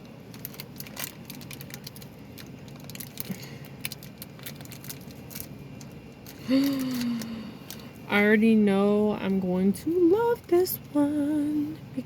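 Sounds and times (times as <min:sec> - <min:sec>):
plastic packaging crinkling and tearing: 0:00.0 - 0:07.9.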